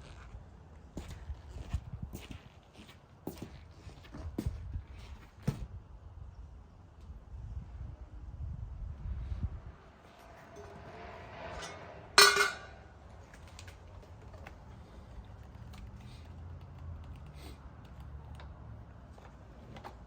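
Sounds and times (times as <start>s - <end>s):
metallic clang: 10.2s - 13.0s.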